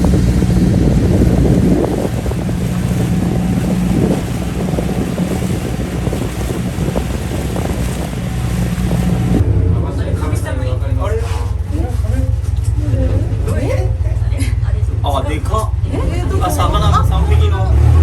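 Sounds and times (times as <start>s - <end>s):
wind on microphone: 0.0s - 9.5s
water noise: 0.0s - 14.1s
boat engine humming: 0.0s - 18.0s.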